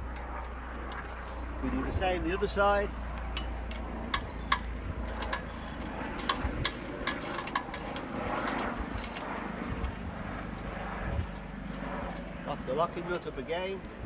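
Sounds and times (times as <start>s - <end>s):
steady low hum: 0.0s - 14.0s
socket wrench clicking on metal: 3.3s - 9.3s.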